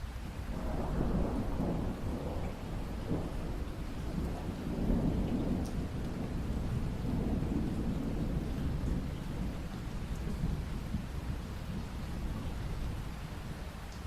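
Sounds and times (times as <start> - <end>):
steady rain: 0.0 - 14.0
rolling thunder: 0.5 - 13.8.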